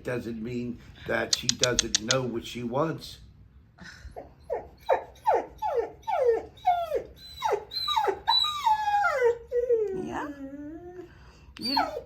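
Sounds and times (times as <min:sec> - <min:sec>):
dog whining: 0:04.2 - 0:12.0.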